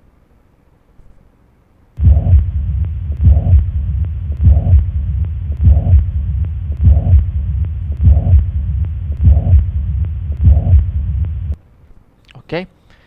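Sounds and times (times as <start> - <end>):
blowing heart murmur: 2.0 - 11.6
slow regular heartbeat: 2.0 - 11.6.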